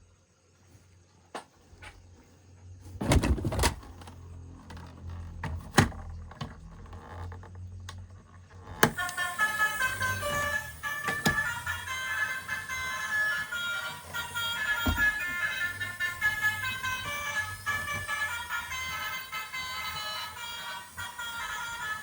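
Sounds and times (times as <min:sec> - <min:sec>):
electronic jingle: 0:09.0 - 0:22.0.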